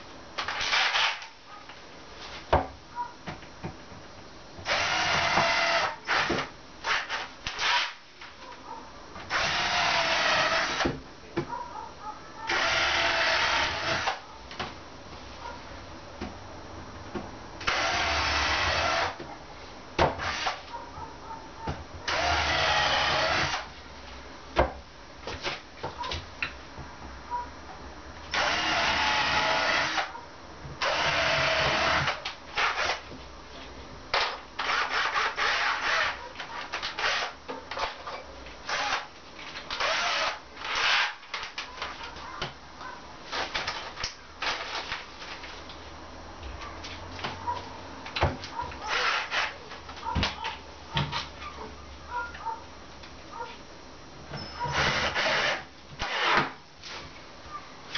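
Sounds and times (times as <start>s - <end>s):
power drill driving fasteners: 0.4s - 1.3s, 4.7s - 8.0s, 9.3s - 10.9s, 12.5s - 14.2s, 17.6s - 19.2s, 20.2s - 20.6s, 22.1s - 23.7s, 28.3s - 30.1s, 30.8s - 33.0s, 34.2s - 38.1s, 38.7s - 41.6s, 48.8s - 49.6s, 54.7s - 56.6s.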